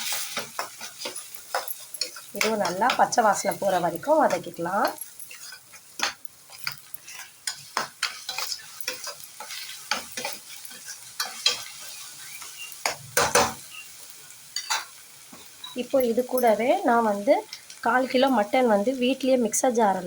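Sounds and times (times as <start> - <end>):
spatula scraping a pan: 0.0 - 13.8, 14.5 - 15.8
frying sizzle: 0.0 - 20.0.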